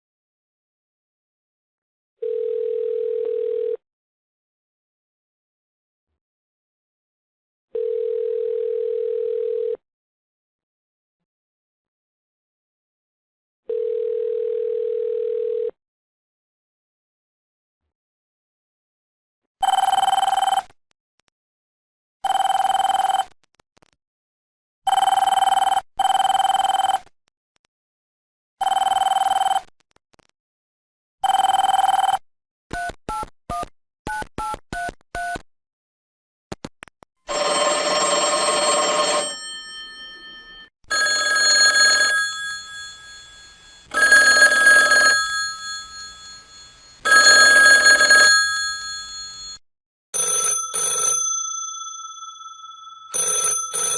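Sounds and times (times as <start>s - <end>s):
fuller telephone ring: 2.2s - 3.8s, 7.8s - 9.8s, 13.7s - 15.7s, 19.6s - 20.6s, 37.3s - 49.6s, 50.2s - 53.9s
phone ringing in short bursts: 37.3s - 49.6s, 50.2s - 53.9s.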